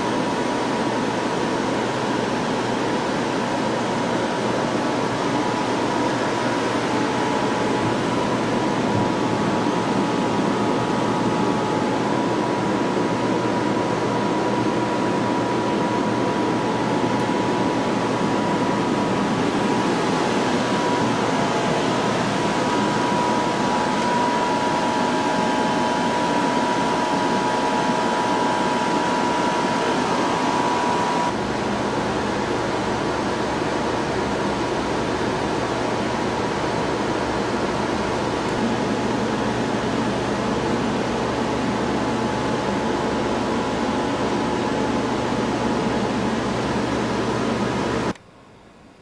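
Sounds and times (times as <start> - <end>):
faint steady whine: 0.0 - 49.0
ventilation hum and hiss: 0.0 - 49.0.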